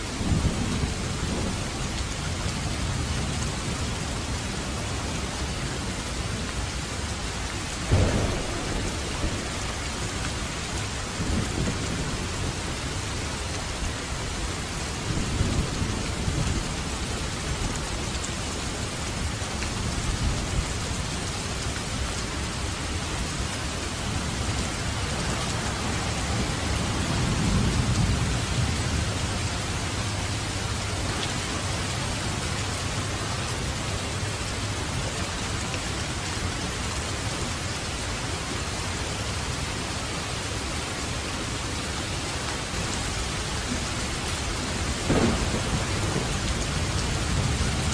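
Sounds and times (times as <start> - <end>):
rain pouring: 0.0 - 47.9
thunder rolling: 7.8 - 12.6, 44.8 - 47.9.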